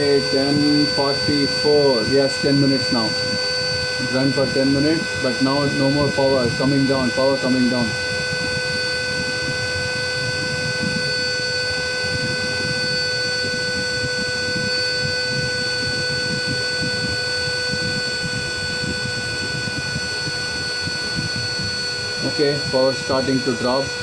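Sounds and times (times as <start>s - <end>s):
vacuum cleaner motor whining: 0.0s - 24.0s.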